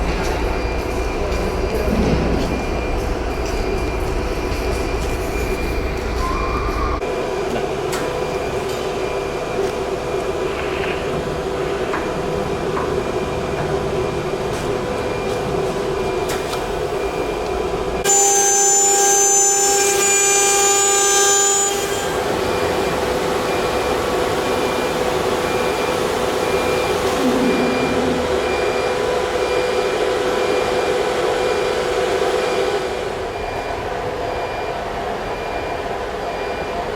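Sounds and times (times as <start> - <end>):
cnc router humming and whining: 17.4 - 36.9.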